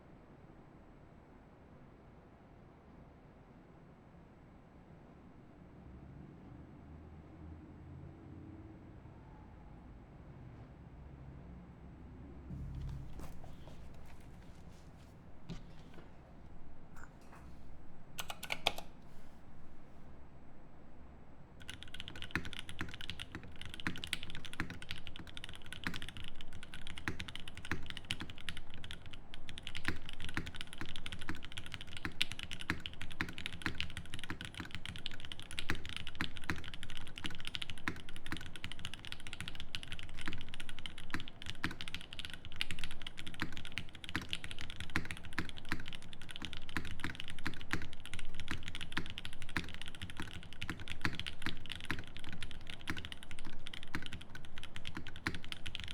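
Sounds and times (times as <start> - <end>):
mechanical keyboard typing: 18.2 - 19.0, 21.6 - 55.9.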